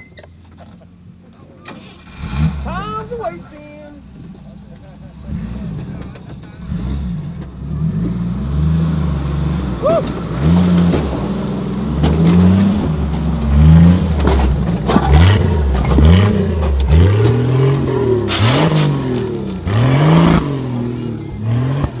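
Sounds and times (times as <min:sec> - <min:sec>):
off-road vehicle engine revving: 0:00.5 - 0:22.0
tires knocking on rock: 0:10.0 - 0:19.8.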